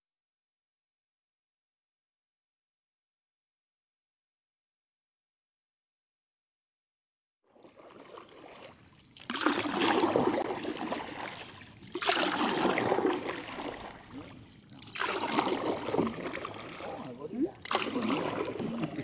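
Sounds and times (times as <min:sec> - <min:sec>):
paddle splashing in water: 0:07.5 - 0:19.0
water dripping: 0:08.9 - 0:19.0.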